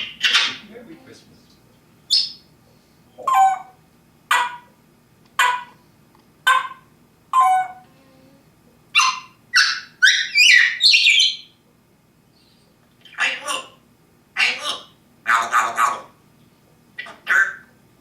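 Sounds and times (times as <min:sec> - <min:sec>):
parrot calling: 0:00.0 - 0:01.2, 0:02.1 - 0:02.5, 0:03.1 - 0:04.8, 0:05.4 - 0:05.8, 0:06.4 - 0:07.9, 0:08.9 - 0:11.6, 0:12.4 - 0:16.2, 0:17.0 - 0:17.8.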